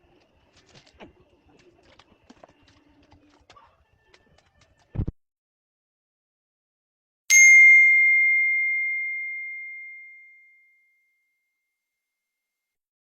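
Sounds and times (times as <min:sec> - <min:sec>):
bell-like ding: 0:07.3 - 0:11.5.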